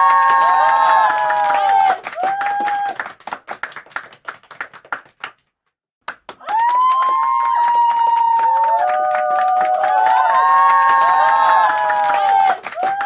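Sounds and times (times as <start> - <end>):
crowd cheering: 0.0 - 4.0, 6.3 - 13.0
crowd cheering and clapping: 0.0 - 5.4, 6.0 - 13.0
applause: 0.0 - 13.0.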